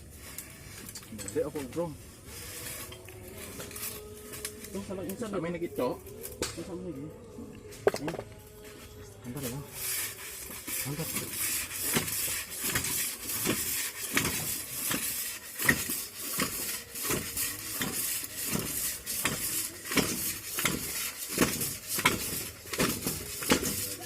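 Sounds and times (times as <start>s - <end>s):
rhythmic metallic clanking: 9.4s - 24.0s.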